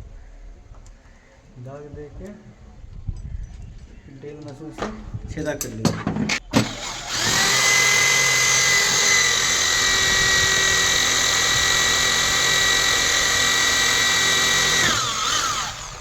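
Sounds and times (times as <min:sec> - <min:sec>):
electric drill running: 0:06.6 - 0:16.0.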